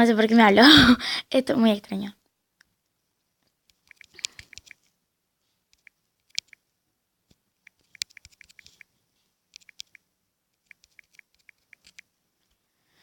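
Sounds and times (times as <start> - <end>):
typing taps on smartphone: 3.7 - 4.9, 5.7 - 6.7, 7.6 - 8.9, 9.5 - 12.1.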